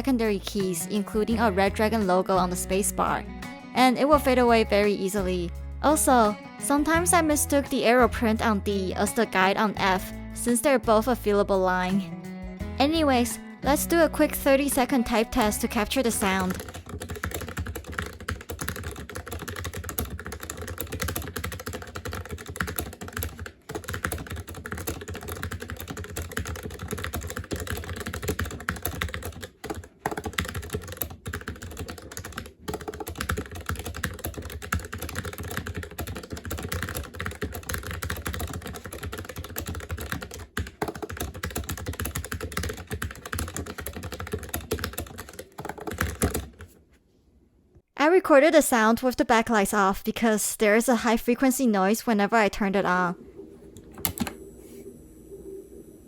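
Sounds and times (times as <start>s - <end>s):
mechanical keyboard typing: 14.9s - 46.7s.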